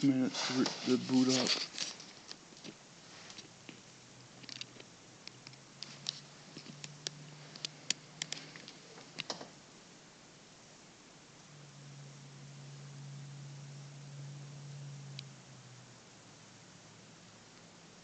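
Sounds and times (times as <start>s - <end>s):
low steady hum: 0.0s - 18.0s
faint clicks and taps: 1.5s - 9.5s.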